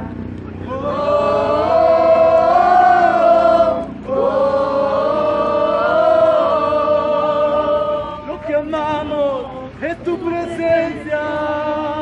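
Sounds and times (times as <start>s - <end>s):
group singing worship song: 0.7s - 12.0s.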